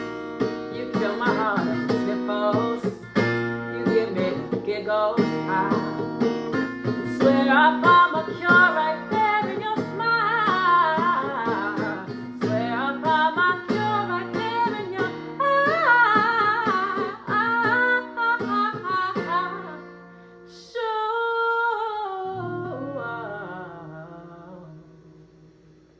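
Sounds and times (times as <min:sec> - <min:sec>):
plucked acoustic guitar: 0:00.0 - 0:25.9.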